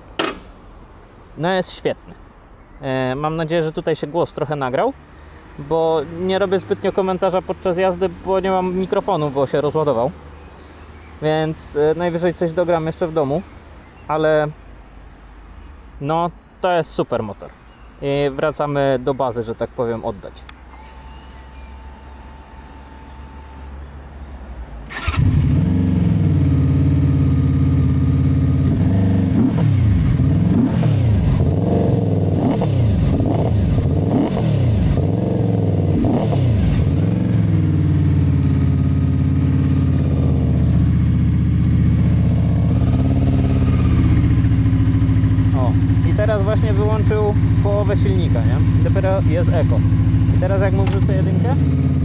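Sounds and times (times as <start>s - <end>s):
motorcycle engine revving and idling: 24.9s - 52.0s.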